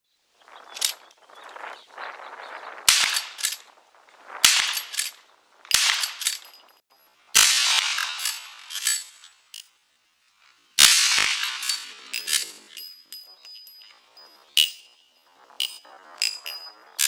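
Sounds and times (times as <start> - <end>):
rifle shots with echo: 2.9 - 3.5, 4.4 - 5.1, 5.7 - 6.4, 7.4 - 8.9, 10.8 - 12.7.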